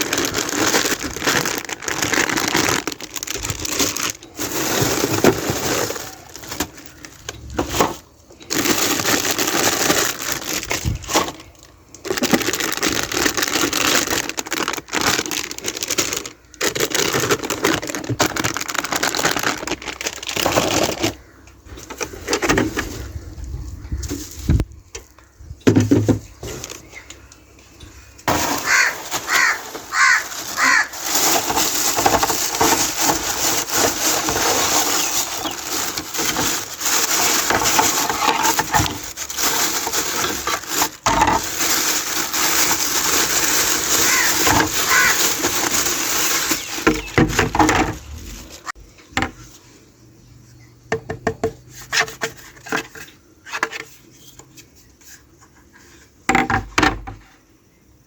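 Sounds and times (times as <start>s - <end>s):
packaging rustling: 0.0s - 23.0s, 28.2s - 48.8s.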